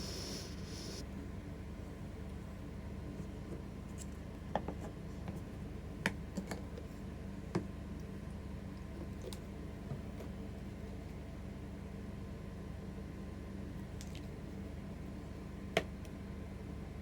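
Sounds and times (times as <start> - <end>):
steady low hum: 0.0 - 4.4.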